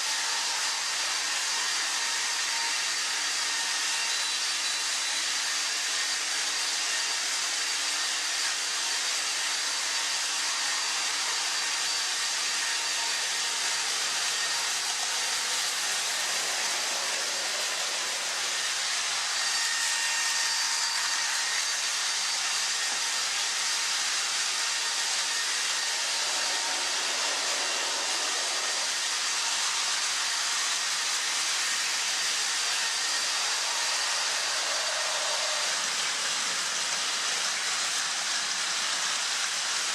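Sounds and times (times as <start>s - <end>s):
toy train motors whirring: 0.0s - 39.9s.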